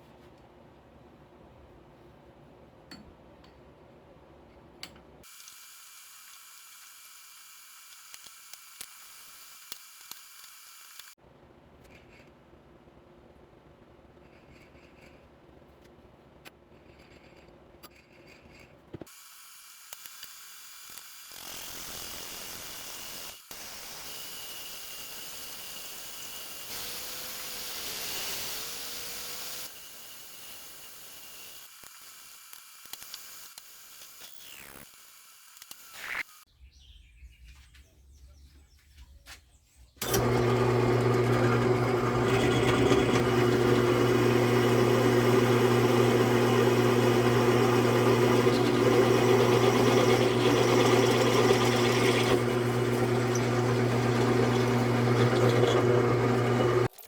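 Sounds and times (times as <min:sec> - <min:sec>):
electric machine tool humming: 0:40.0 - 0:56.9.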